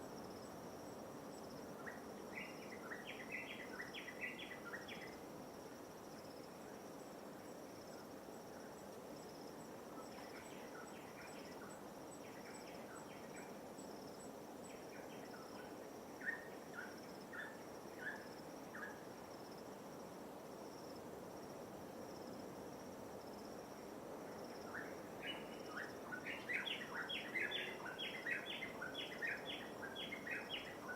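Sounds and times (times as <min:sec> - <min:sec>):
insect chirring: 0:24.4 - 0:30.9.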